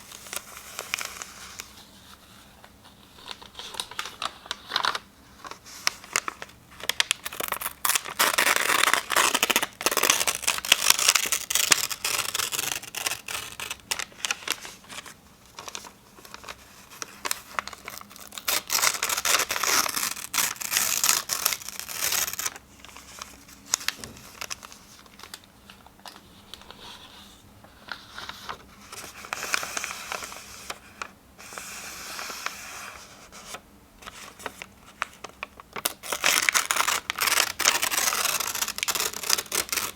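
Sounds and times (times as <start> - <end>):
paper rustling: 0.0 - 39.9
paper tearing: 6.8 - 14.7, 17.3 - 22.6, 35.8 - 39.9.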